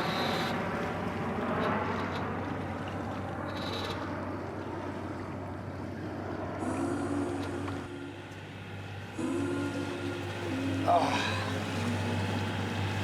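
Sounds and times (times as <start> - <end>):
light wind: 0.0 - 9.2
constant low hum: 0.0 - 13.0.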